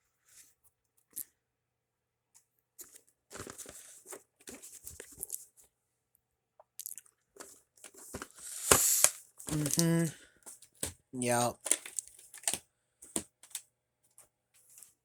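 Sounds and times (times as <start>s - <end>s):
plastic crinkling and rustling: 2.8s - 5.5s, 7.4s - 10.9s.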